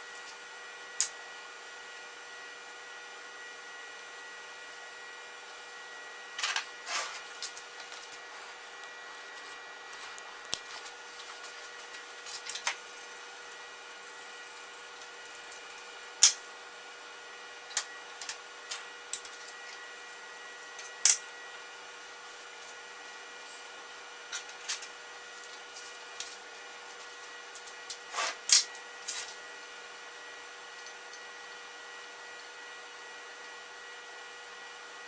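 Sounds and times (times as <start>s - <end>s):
steady electrical hum: 0.0s - 35.0s.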